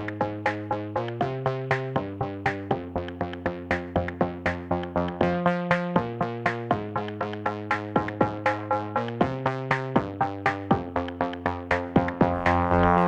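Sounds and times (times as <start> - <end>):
drum machine beat: 0.0 - 13.0
synthesizer notes: 7.0 - 13.0.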